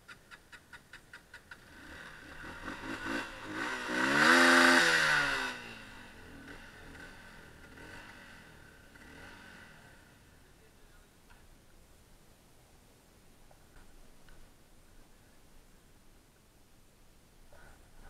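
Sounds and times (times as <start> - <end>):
vehicle engine revving: 1.5 - 10.2.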